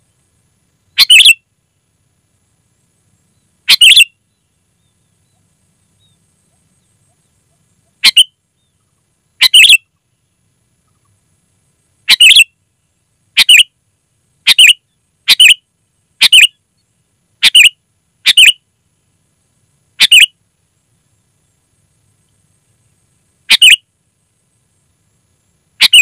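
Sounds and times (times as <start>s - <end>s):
bird giving sharp calls: 1.0s - 1.4s, 3.7s - 4.1s, 7.9s - 8.3s, 9.4s - 9.8s, 12.1s - 12.5s, 13.4s - 13.7s, 14.5s - 15.6s, 16.2s - 16.6s, 17.4s - 17.7s, 18.3s - 18.6s, 20.0s - 20.3s, 23.5s - 23.8s, 25.8s - 26.0s.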